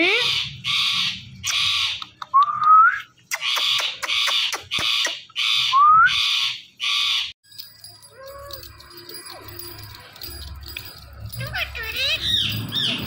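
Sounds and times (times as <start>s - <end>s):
parrot screeching: 0.2s - 2.0s, 3.4s - 7.3s.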